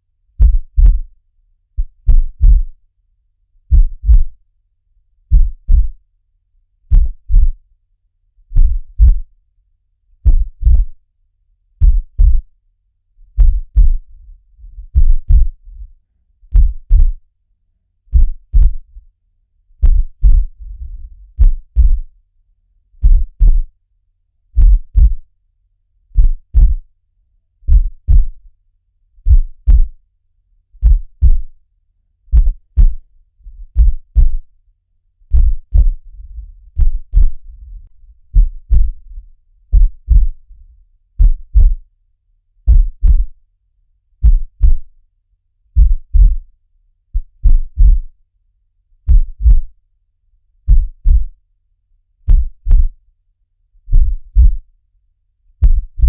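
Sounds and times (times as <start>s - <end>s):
faint low rumble: 0.3s - 1.2s, 1.8s - 2.9s, 3.6s - 4.5s, 5.2s - 6.1s, 6.9s - 7.7s, 8.4s - 9.4s, 10.2s - 11.0s, 11.8s - 12.6s, 13.2s - 17.4s, 18.1s - 22.3s, 22.9s - 23.8s, 24.6s - 25.4s, 26.1s - 26.9s, 27.7s - 28.6s, 29.2s - 30.1s, 30.8s - 31.6s, 32.2s - 41.9s, 42.6s - 43.4s, 44.2s - 45.0s, 45.7s - 46.5s, 47.1s - 48.2s, 49.0s - 49.8s, 50.6s - 51.4s, 52.3s - 53.0s, 53.9s - 54.7s, 55.6s - 56.0s
heartbeat double thump: 0.4s - 1.1s, 1.8s - 2.7s, 3.7s - 4.4s, 5.3s - 6.0s, 6.9s - 7.6s, 8.6s - 9.3s, 10.2s - 11.0s, 11.8s - 12.5s, 13.4s - 14.0s, 14.8s - 15.6s, 16.5s - 17.2s, 18.1s - 18.9s, 19.8s - 22.1s, 23.0s - 23.7s, 24.6s - 25.2s, 26.2s - 26.8s, 27.7s - 28.4s, 29.3s - 30.0s, 30.8s - 31.5s, 32.3s - 34.5s, 35.3s - 40.4s, 41.2s - 41.8s, 42.7s - 43.4s, 44.2s - 44.9s, 45.8s - 46.4s, 47.2s - 48.1s, 49.1s - 49.7s, 50.7s - 51.3s, 52.3s - 52.9s, 53.9s - 54.6s, 55.6s - 56.0s.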